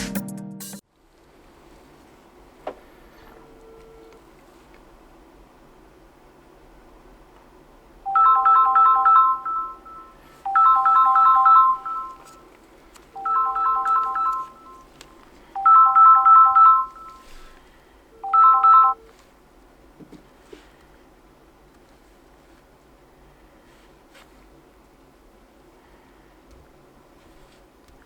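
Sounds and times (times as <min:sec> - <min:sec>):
phone ringtone melody: 0:08.1 - 0:12.4, 0:13.2 - 0:14.9, 0:15.6 - 0:17.3, 0:18.2 - 0:19.1.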